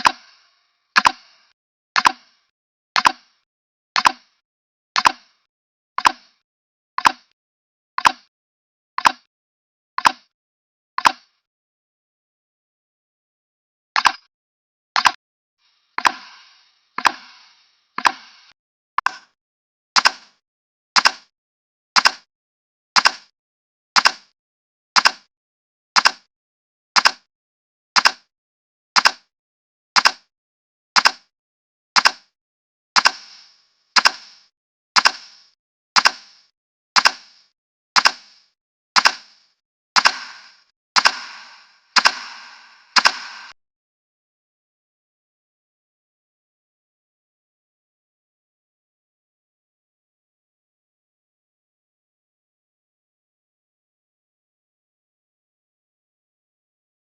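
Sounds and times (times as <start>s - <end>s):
timer ticking double clicks: 0.0s - 0.3s, 1.0s - 1.4s, 2.0s - 2.3s, 3.0s - 3.4s, 4.0s - 4.3s, 5.0s - 5.4s, 6.0s - 6.4s, 7.0s - 7.4s, 8.0s - 8.3s, 9.0s - 9.3s, 10.0s - 10.3s, 11.0s - 11.3s, 14.0s - 14.3s, 15.0s - 15.2s, 17.0s - 19.4s, 20.0s - 20.4s, 21.0s - 21.3s, 22.0s - 22.3s, 23.0s - 23.3s, 24.0s - 24.3s, 25.0s - 25.3s, 26.0s - 26.3s, 27.0s - 27.3s, 28.0s - 28.3s, 29.0s - 29.3s, 30.0s - 30.3s, 31.0s - 31.3s, 32.0s - 32.3s, 33.0s - 33.4s, 34.0s - 39.4s, 40.0s - 43.6s.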